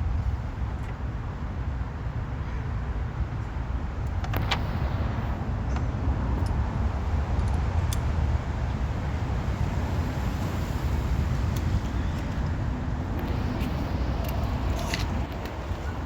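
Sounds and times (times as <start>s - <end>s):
vehicle engine rumbling: 3.3s - 16.0s.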